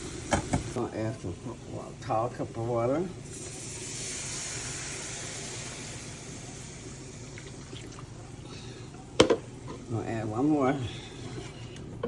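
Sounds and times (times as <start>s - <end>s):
gravy hissing and bubbling: 0.0s - 12.0s
water pouring from a cup: 7.3s - 8.2s.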